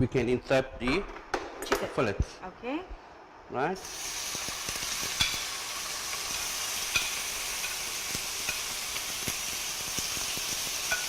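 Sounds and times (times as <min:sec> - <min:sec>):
chicken frying in hot oil: 0:03.9 - 0:11.0.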